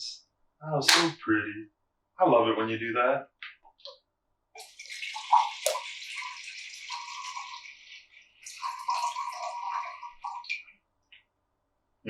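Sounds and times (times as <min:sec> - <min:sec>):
parrot mimicking pouring water: 0:04.6 - 0:10.6.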